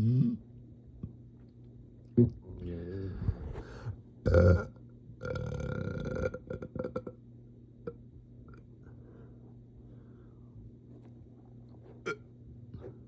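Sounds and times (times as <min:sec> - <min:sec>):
person burping: 0:04.2 - 0:07.2.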